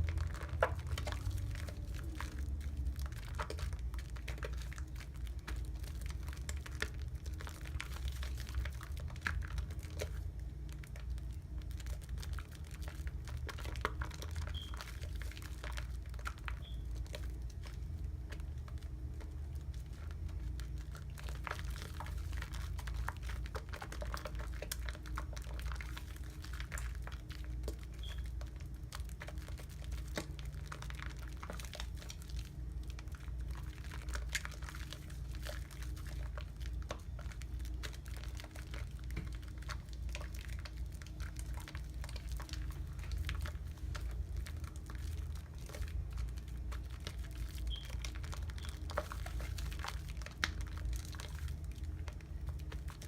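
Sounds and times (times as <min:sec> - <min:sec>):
steady low hum: 0:00.0 - 0:53.0
wet crackling of soap lather: 0:00.0 - 0:53.0.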